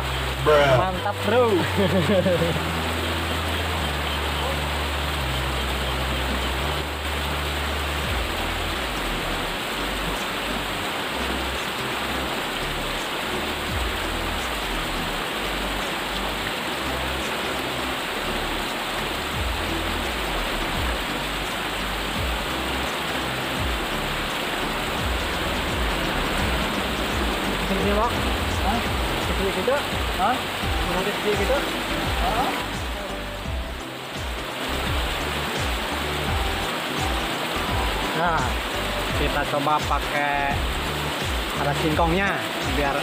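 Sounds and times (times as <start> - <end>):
water hissing: 0.0 - 43.0
low rumble: 25.0 - 29.4.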